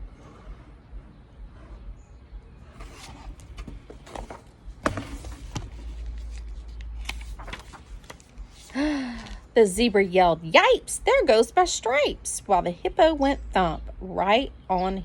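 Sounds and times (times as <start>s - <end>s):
paper pages rustling: 2.8s - 9.4s.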